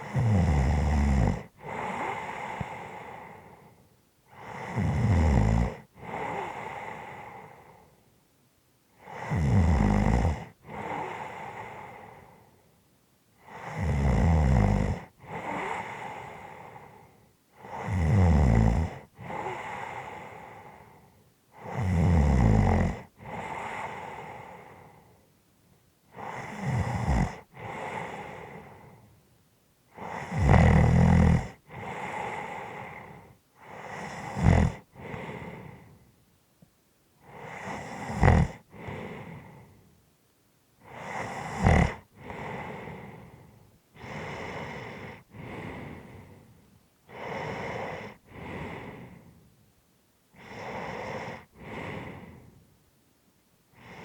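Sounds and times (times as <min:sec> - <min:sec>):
person snoring: 0:00.0 - 0:03.6, 0:04.3 - 0:07.6, 0:09.0 - 0:12.2, 0:13.4 - 0:17.0, 0:17.6 - 0:21.0, 0:21.6 - 0:24.9, 0:26.1 - 0:29.0, 0:30.0 - 0:35.9, 0:37.2 - 0:39.7, 0:40.8 - 0:43.4, 0:44.0 - 0:46.3, 0:47.1 - 0:49.2, 0:50.4 - 0:52.4
breathy breath: 0:01.6 - 0:04.8, 0:05.8 - 0:08.0, 0:10.6 - 0:12.7, 0:15.1 - 0:18.0, 0:18.9 - 0:21.9, 0:23.0 - 0:25.2, 0:27.2 - 0:29.1, 0:31.4 - 0:36.1, 0:37.2 - 0:39.9, 0:40.8 - 0:49.5, 0:50.3 - 0:52.7, 0:53.7 - 0:54.0.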